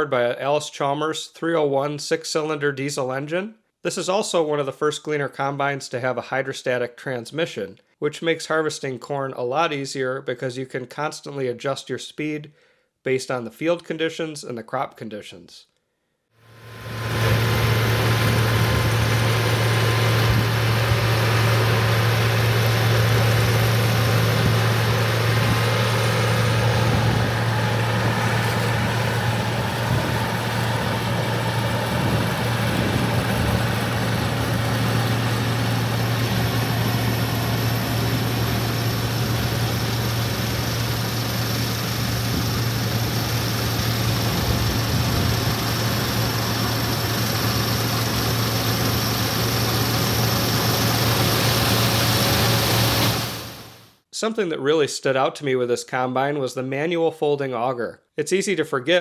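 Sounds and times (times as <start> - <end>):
combine harvester running: 16.4 - 53.8.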